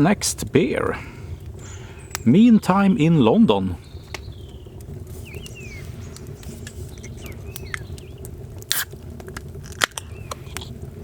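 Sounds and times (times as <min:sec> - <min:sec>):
low rumble: 0:00.0 - 0:11.0
wood fire crackling and popping: 0:00.0 - 0:11.0
small birds chirping: 0:01.2 - 0:08.5, 0:10.0 - 0:10.8.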